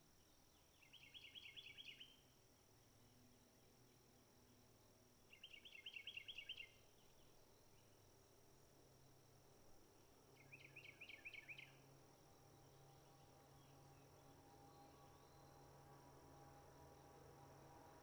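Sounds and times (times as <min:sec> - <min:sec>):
faint high-pitched drone: 0:10.0 - 0:18.0.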